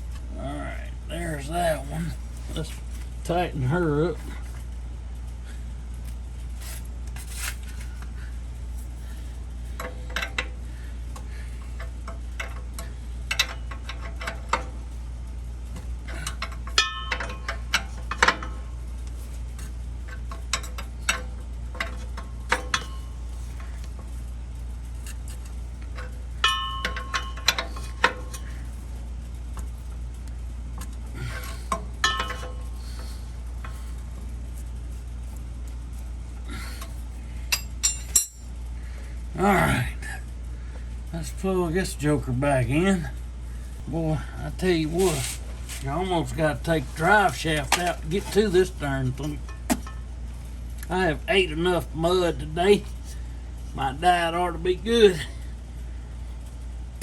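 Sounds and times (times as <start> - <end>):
steady low hum: 0.0 - 57.0
metal tools clicking and clinking: 9.7 - 10.6, 11.2 - 14.7, 16.0 - 24.2, 24.9 - 28.8, 30.8 - 34.3, 36.8 - 38.5, 44.6 - 50.1.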